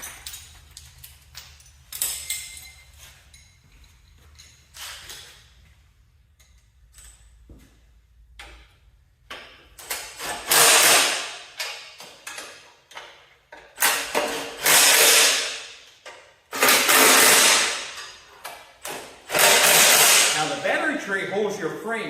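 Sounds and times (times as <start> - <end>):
power tool bursts: 10.2 - 11.4, 14.5 - 15.6, 16.6 - 17.9, 19.3 - 20.4.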